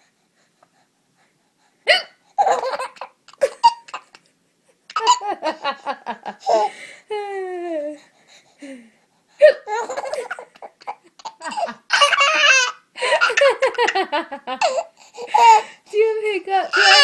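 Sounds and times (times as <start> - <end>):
woman hiccuping: 1.9 - 2.2
baby laughing: 1.9 - 4.2, 4.9 - 5.6, 6.2 - 6.7, 9.4 - 15.7, 16.6 - 17.0
baby squealing: 11.4 - 13.5, 16.6 - 17.0.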